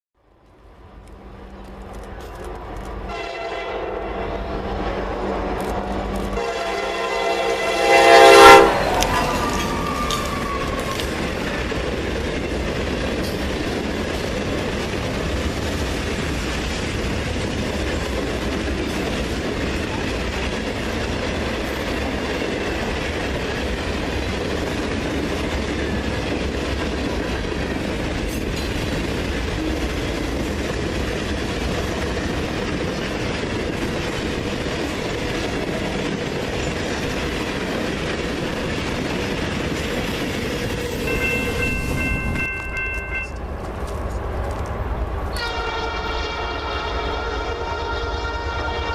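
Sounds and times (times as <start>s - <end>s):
freight train rumbling: 0.2s - 48.9s
train horn: 3.1s - 10.9s, 45.3s - 48.9s
wheel and rail clatter: 8.9s - 45.5s.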